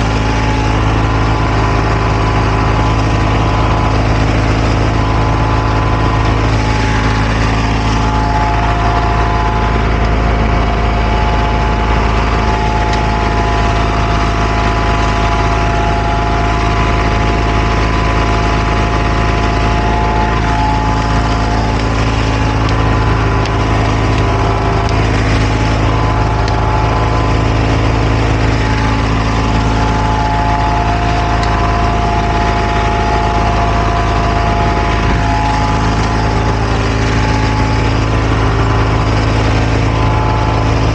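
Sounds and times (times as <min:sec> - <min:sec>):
heavy diesel engine droning: 0:00.0 - 0:40.9
steady whine: 0:00.0 - 0:40.9.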